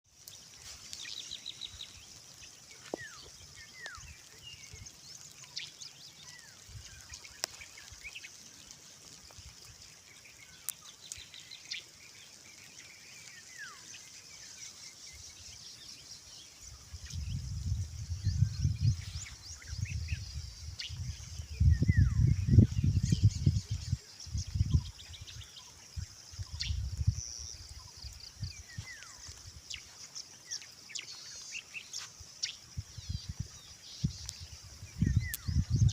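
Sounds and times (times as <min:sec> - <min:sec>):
high-pitched hiss: 0:00.0 - 0:35.9
birds chirping: 0:00.1 - 0:35.9.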